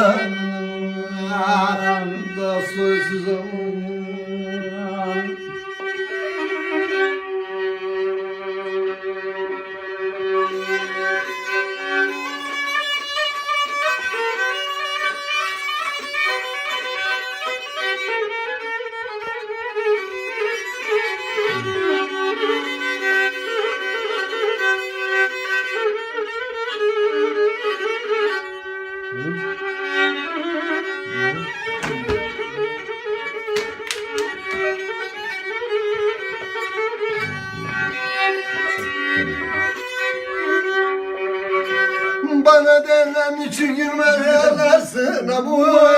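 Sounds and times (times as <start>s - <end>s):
violin folk melody: 0.0s - 45.9s
held drone note: 21.4s - 23.2s, 30.9s - 33.0s, 37.1s - 40.8s.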